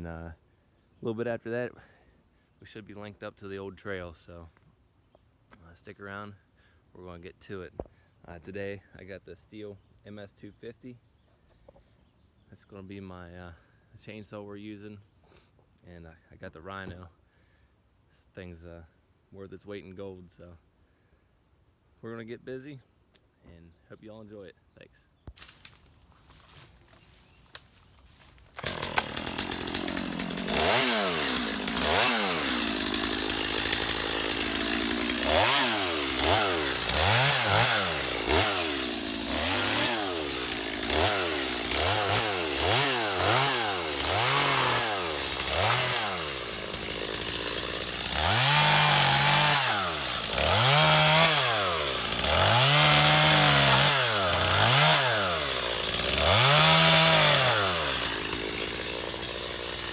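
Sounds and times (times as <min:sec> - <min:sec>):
chainsaw revving: 0:25.4 - 0:59.9.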